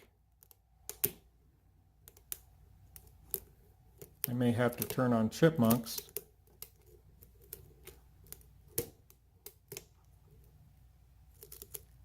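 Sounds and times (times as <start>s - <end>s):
lock pick clicking: 0.3s - 1.3s.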